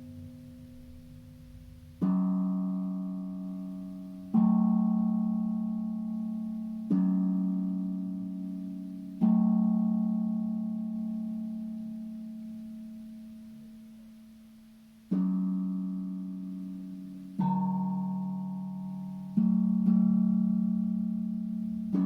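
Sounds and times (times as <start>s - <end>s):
steel tongue drum notes: 15.1s - 22.0s.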